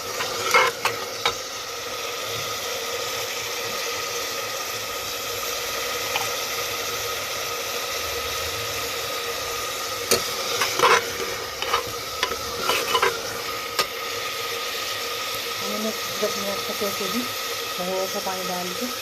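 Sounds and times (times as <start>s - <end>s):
spoon scraping a pan: 0.0s - 1.5s, 10.0s - 14.0s
food sizzling in a pan: 0.0s - 19.0s.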